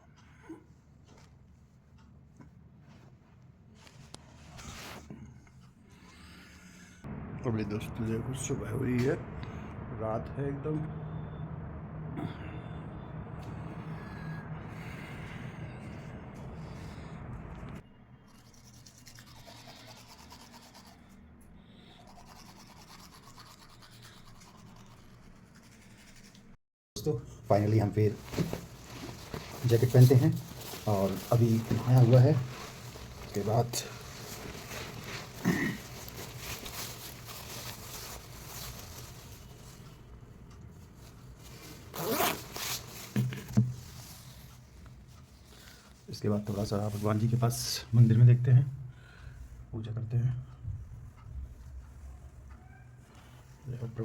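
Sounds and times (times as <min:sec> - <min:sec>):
fabric rustling: 0:02.8 - 0:05.1, 0:27.5 - 0:47.6
low steady hum: 0:05.2 - 0:18.6, 0:27.0 - 0:54.0
jacket zipper being zipped: 0:28.2 - 0:39.1, 0:41.5 - 0:43.6.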